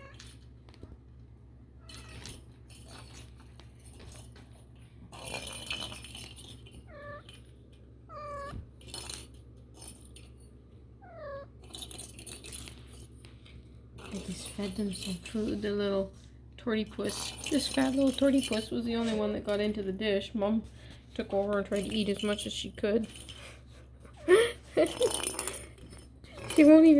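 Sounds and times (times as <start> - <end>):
cat meowing: 0.0 - 0.2, 6.8 - 7.4, 8.1 - 8.7, 11.0 - 11.6
rustling: 0.0 - 16.4.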